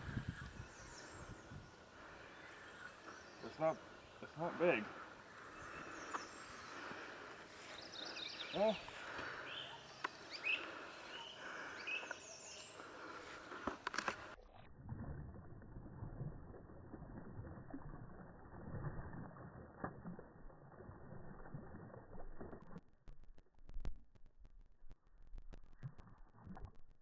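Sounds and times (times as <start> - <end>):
birds chirping: 0.0 - 14.4.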